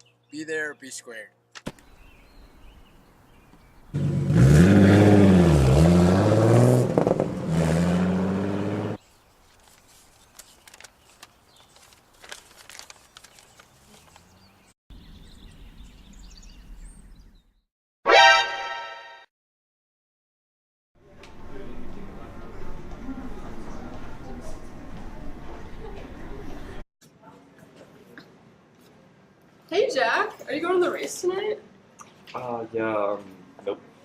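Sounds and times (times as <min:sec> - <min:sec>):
car engine revving: 0:04.0 - 0:09.0.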